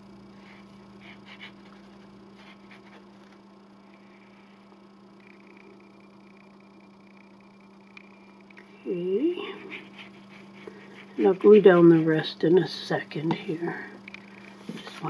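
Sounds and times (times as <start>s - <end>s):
faint electrical hum: 0.0s - 15.0s
glue nozzle scratching paper: 9.6s - 12.3s.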